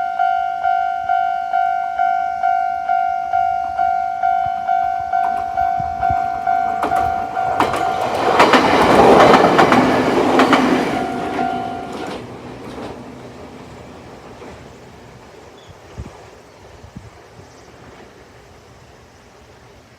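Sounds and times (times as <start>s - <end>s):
level crossing warning bell: 0.0s - 12.2s
train wheels clacking over rails: 4.4s - 15.4s.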